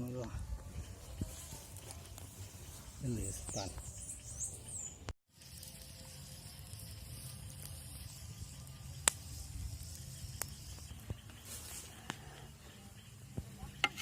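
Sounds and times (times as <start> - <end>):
sharp crackles: 5.3 - 12.5.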